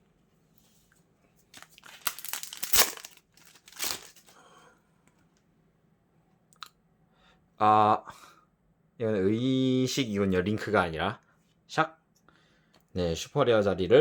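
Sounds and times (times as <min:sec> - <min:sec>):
foil pack crinkling: 0:01.5 - 0:04.4
foil pack ripping: 0:01.6 - 0:04.4.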